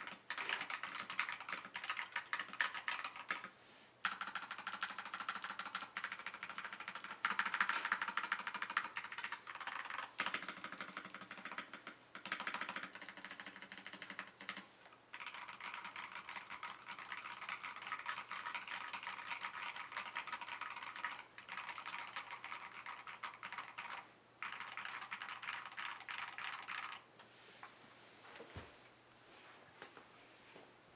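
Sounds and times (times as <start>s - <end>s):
mechanical keyboard typing: 0.0s - 27.0s.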